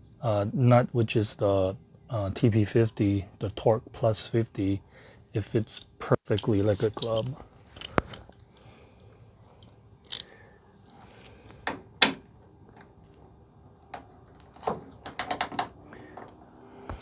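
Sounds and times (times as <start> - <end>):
socket wrench clicking: 9.6 - 10.3.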